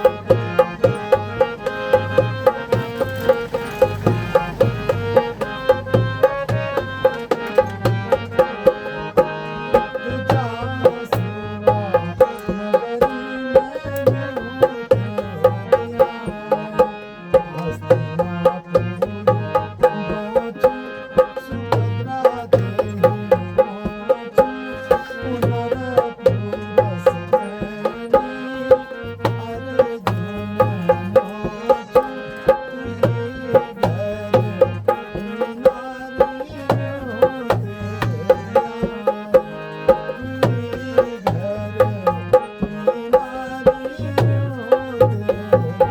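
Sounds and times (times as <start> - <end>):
hand drum rhythm: 0.0 - 45.9
sustained melody: 0.0 - 45.9.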